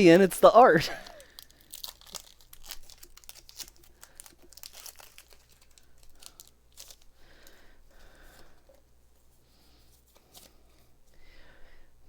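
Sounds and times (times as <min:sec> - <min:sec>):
foil wrapper crinkling and tearing: 0:00.2 - 0:07.6.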